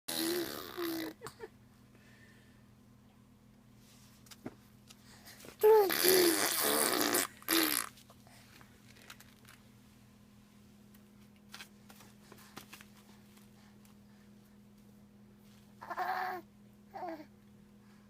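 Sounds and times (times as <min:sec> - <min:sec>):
low electrical hum: 0:00.1 - 0:18.0
spluttering fart: 0:05.9 - 0:08.0.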